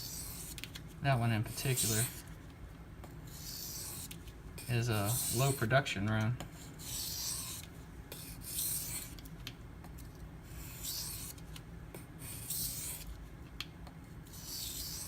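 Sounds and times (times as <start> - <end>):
knife scraping on a whetstone: 1.5 - 2.2, 3.3 - 5.6, 6.8 - 9.1, 14.3 - 15.0.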